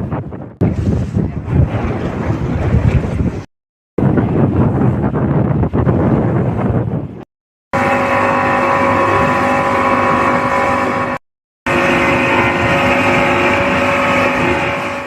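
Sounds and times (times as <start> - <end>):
outboard engines running: 7.7 - 15.0.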